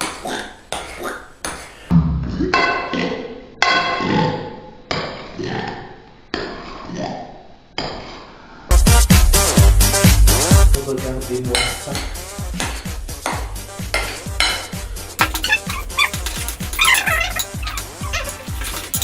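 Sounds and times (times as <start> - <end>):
metal spoon clinking against bowl: 15.2 - 19.0.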